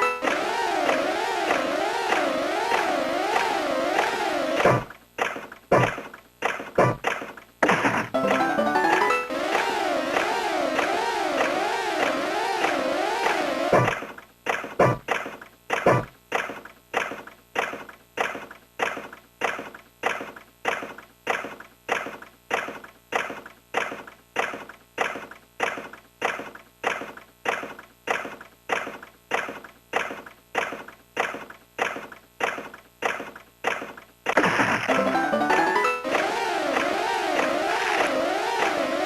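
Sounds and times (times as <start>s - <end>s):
warbling electronic siren tones: 0.0s - 4.9s, 8.2s - 14.0s, 34.9s - 39.0s.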